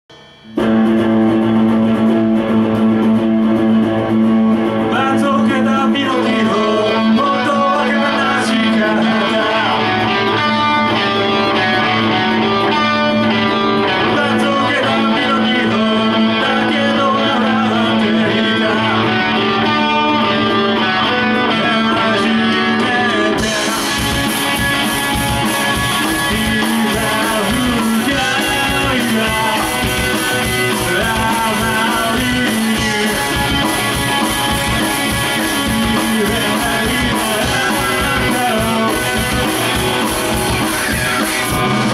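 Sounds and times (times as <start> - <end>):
electric guitar: 0.1 - 41.9
live rock band playing: 0.1 - 41.9
cymbals and drums: 23.4 - 41.9.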